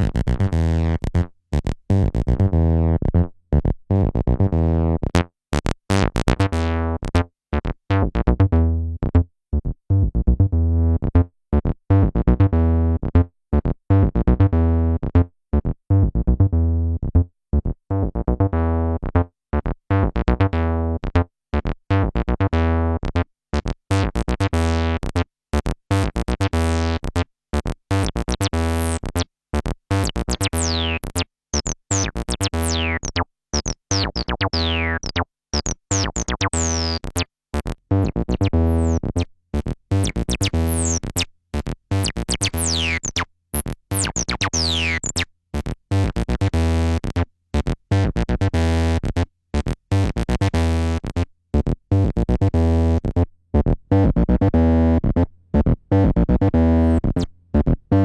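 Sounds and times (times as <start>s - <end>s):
synth acid bassline: 27.6s - 58.0s.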